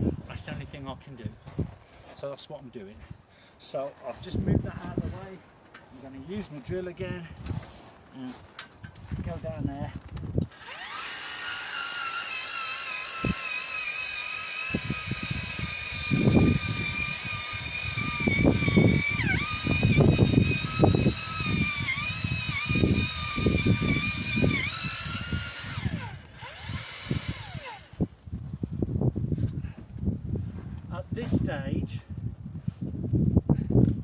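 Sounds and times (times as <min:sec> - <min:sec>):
power drill whining: 0:10.4 - 0:28.1.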